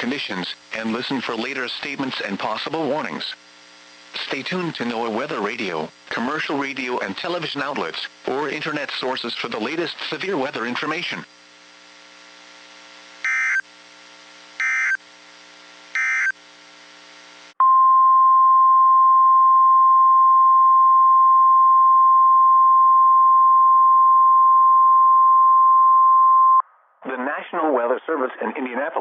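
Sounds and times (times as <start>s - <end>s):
faint steady hum: 0.0s - 17.6s
data bursts: 13.2s - 13.6s, 14.6s - 15.0s, 15.9s - 16.4s
steady warning alarm tone: 13.2s - 13.6s, 14.6s - 15.0s, 15.9s - 16.4s.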